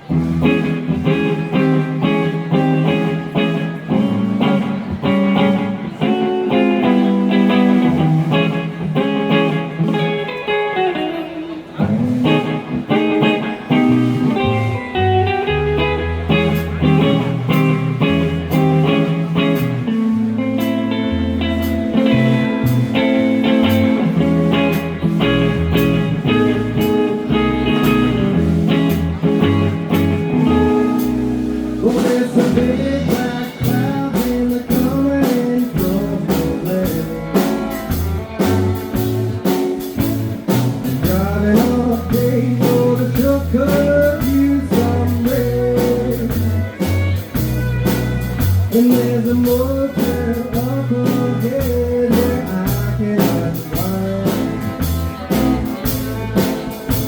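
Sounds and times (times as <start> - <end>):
live band with guitar: 0.0 - 57.0
walking bass line: 0.0 - 57.0
steady drum beat: 16.0 - 57.0.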